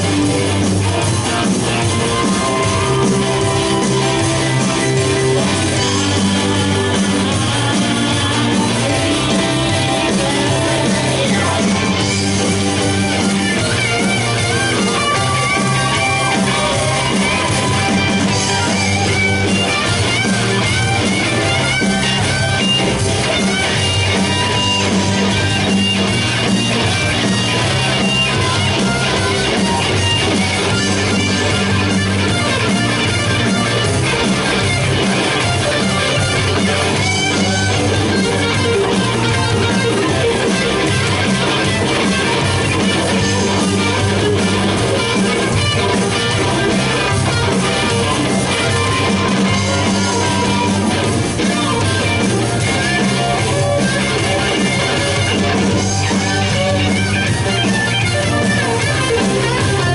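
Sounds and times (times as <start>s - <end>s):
electric guitar lines: 0.0s - 59.9s
live rock band playing: 0.0s - 59.9s.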